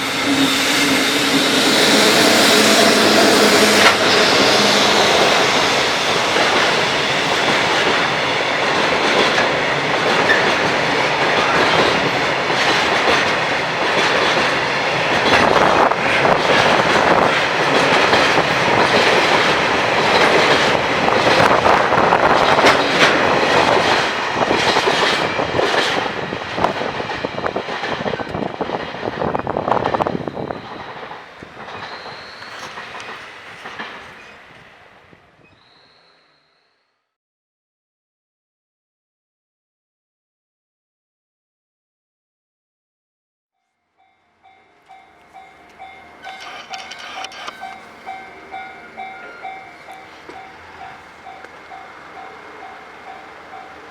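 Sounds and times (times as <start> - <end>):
freight train wheels clattering: 0.0 - 34.7.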